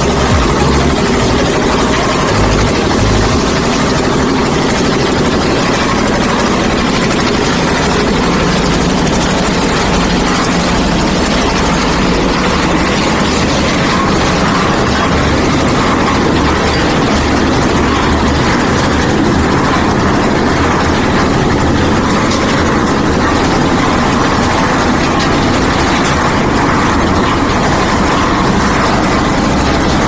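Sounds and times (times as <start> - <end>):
concrete mixer running: 0.0 - 30.0.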